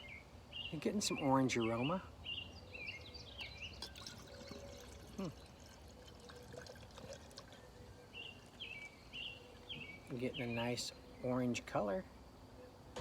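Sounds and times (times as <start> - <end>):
birds chirping: 0.0 - 13.0
drink pouring into glass: 3.7 - 8.9
fizzing crackles: 3.7 - 9.8.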